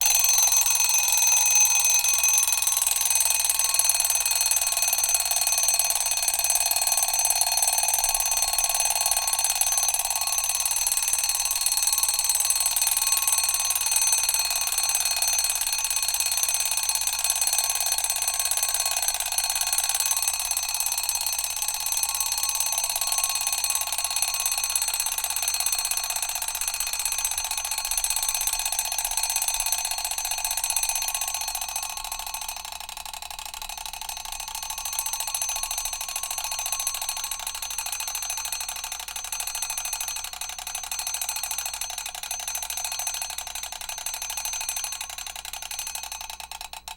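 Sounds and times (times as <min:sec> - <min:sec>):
alarm clock bell ringing: 0:00.0 - 0:46.7.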